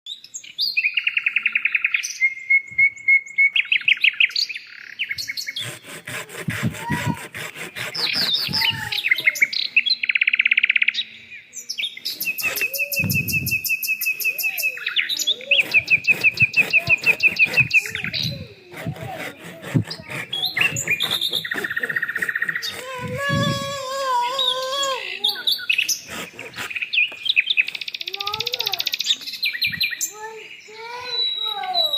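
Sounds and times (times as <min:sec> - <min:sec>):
songbird singing: 0:00.1 - 0:05.8, 0:07.8 - 0:31.9
birds chirping: 0:00.1 - 0:31.9
fast even bird trill: 0:12.1 - 0:18.4.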